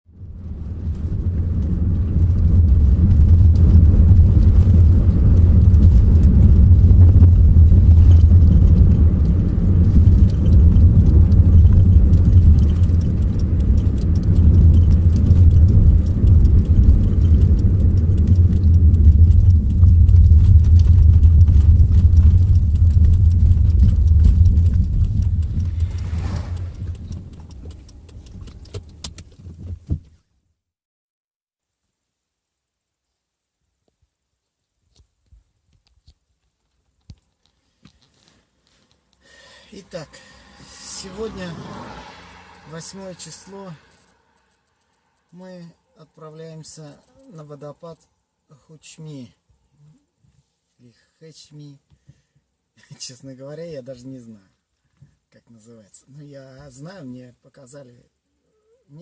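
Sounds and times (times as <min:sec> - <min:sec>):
car rumbling on the move: 0:00.1 - 0:30.3, 0:39.0 - 0:48.2
faint clicks: 0:05.4 - 0:29.9, 0:35.7 - 0:48.1.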